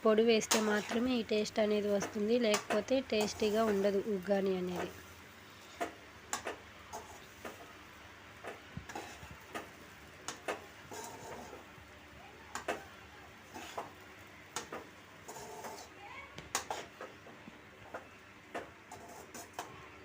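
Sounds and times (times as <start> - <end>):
metal spoon scraping cooking pan: 0.4 - 7.6, 8.9 - 9.7, 10.3 - 11.6, 13.4 - 14.0, 14.6 - 15.9, 16.5 - 16.9, 18.8 - 19.7.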